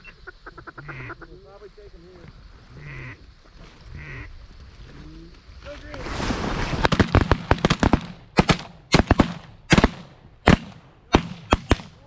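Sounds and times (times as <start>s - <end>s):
shotgun shots: 6.5s - 12.0s.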